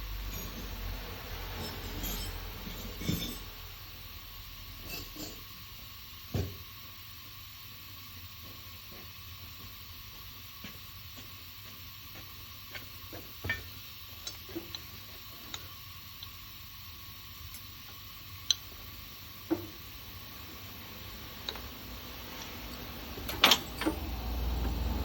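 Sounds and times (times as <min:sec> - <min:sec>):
metal parts and tools clicking: 0:22.7 - 0:24.1.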